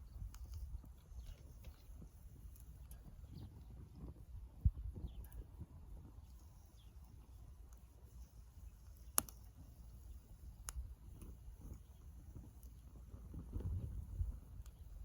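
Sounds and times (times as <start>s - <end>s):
wood fire crackling: 0.0s - 15.0s
sharp fire pops: 10.5s - 15.0s.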